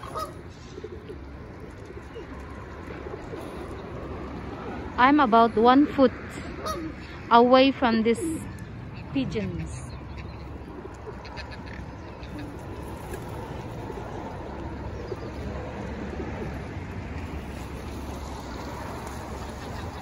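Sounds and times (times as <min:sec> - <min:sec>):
pigeons cooing: 0:00.0 - 0:05.0, 0:08.0 - 0:20.0
low outdoor rumble: 0:00.0 - 0:20.0.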